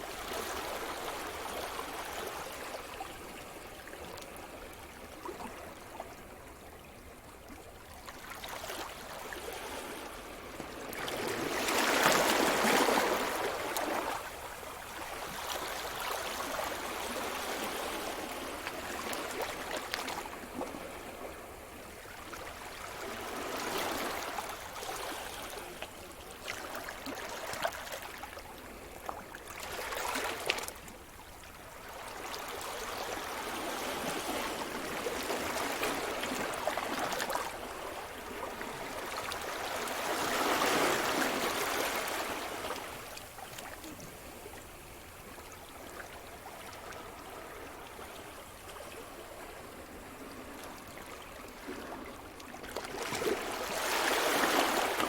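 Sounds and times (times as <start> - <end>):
waves breaking on shore: 49.1 - 55.0.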